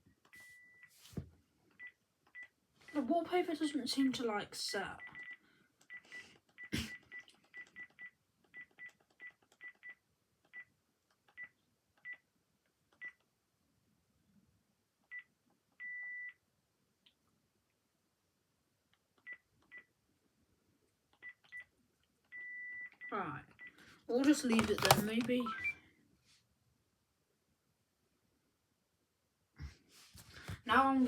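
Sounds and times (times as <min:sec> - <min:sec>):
phone keypad beeps: 0:05.0 - 0:06.1, 0:15.8 - 0:16.4, 0:22.3 - 0:23.7, 0:24.5 - 0:25.7.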